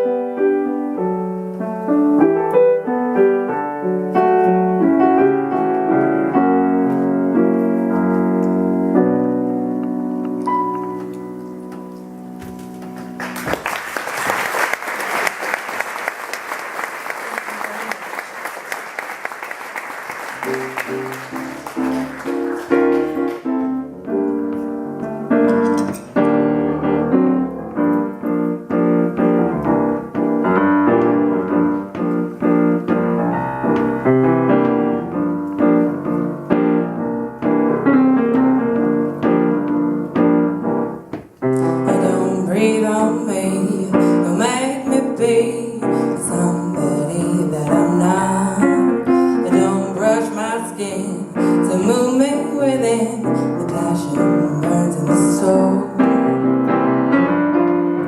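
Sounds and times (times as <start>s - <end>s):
piano playing: 0.0s - 17.0s, 17.6s - 58.0s
applause: 13.0s - 23.4s.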